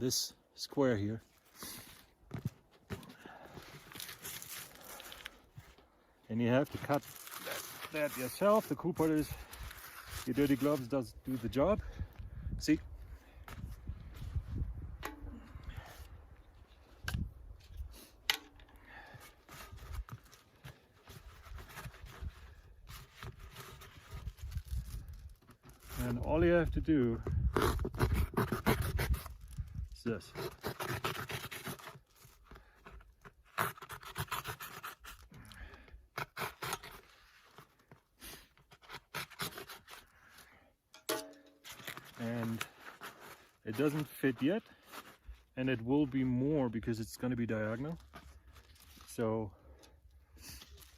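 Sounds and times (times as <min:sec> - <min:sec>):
hands scraping and rubbing tent cover: 0:03.7 - 0:05.2, 0:06.4 - 0:11.6, 0:19.4 - 0:26.4, 0:41.6 - 0:49.3.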